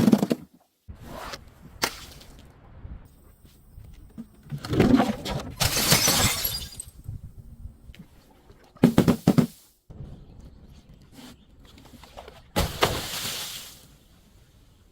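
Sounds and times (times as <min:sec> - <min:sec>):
glass bottle shattering: 0:05.6 - 0:07.0.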